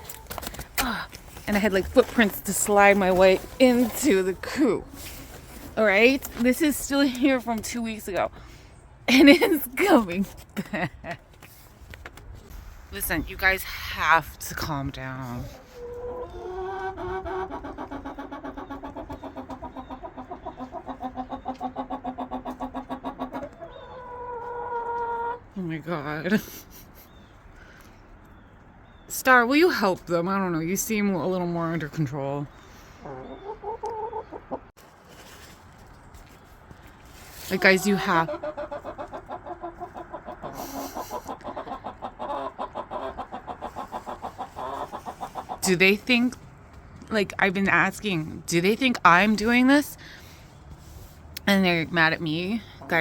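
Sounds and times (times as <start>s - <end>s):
hens clucking: 0.0s - 8.4s, 15.0s - 25.5s, 32.6s - 34.7s, 37.2s - 46.8s, 51.6s - 53.0s.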